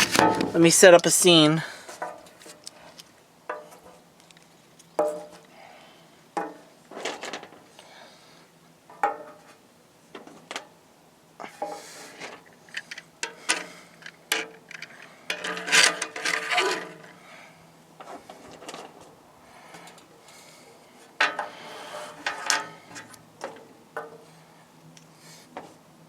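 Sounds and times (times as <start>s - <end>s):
scraping and rubbing: 15.3s - 17.2s, 21.4s - 23.2s.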